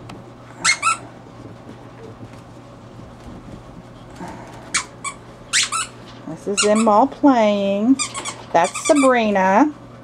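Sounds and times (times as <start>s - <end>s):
steady low hum: 0.0s - 10.0s
puppies scuffling: 0.3s - 10.0s
puppy squeaks: 0.6s - 1.0s, 4.7s - 6.0s, 6.6s - 7.0s, 8.0s - 9.2s.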